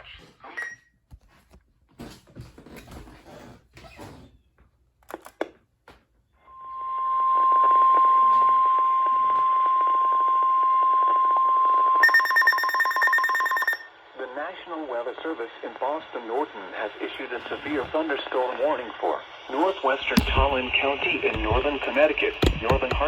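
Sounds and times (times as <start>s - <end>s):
loud single-pitch alarm tone: 6.5s - 13.9s
rapidly pulsing electronic beep: 12.0s - 13.8s
radio static: 13.6s - 23.0s.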